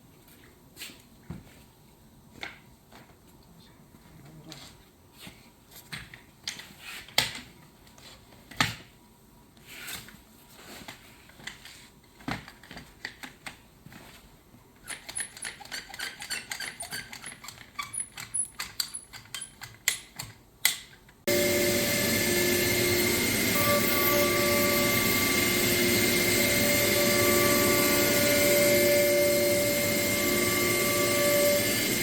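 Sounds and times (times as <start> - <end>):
tools and parts clicking and knocking: 14.8 - 21.2
router machine whining: 21.3 - 32.0.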